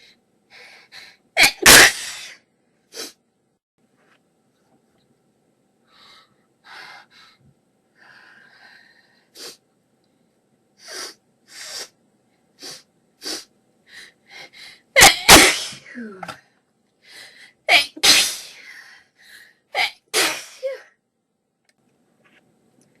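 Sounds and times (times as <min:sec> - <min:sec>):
loud sneezes: 0:01.4 - 0:02.4, 0:15.0 - 0:16.0, 0:17.7 - 0:18.6, 0:19.8 - 0:20.8.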